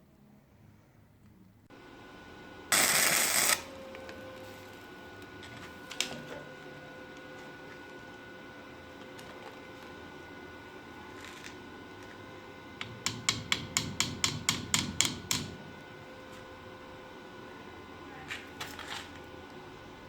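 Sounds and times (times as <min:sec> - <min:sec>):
sharp hand tool taps: 0:13.0 - 0:15.5.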